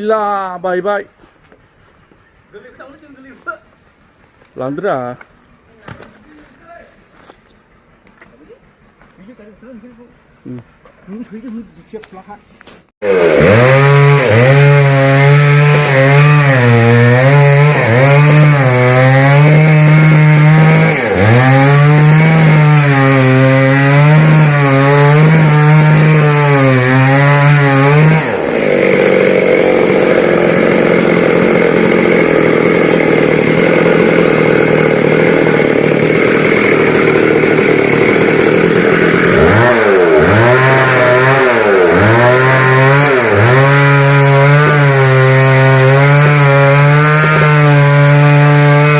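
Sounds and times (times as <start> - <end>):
chainsaw cutting into wood: 13.0 - 48.9
chainsaw revving: 13.0 - 48.9.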